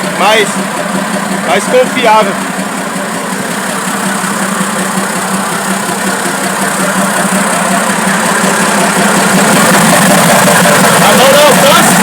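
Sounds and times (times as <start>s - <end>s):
diesel truck engine running: 0.0s - 12.0s.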